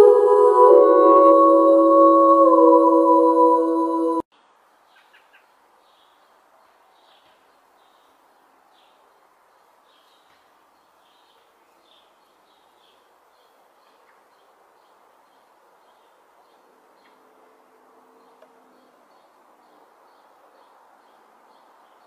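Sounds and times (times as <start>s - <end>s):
soft steady hiss: 4.3s - 22.0s
bird chirping: 4.9s - 6.4s.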